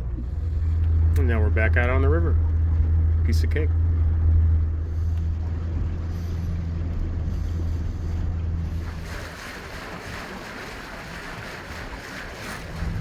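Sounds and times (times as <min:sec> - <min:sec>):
boat engine humming: 0:00.0 - 0:13.0
water and wind hissing: 0:04.6 - 0:13.0.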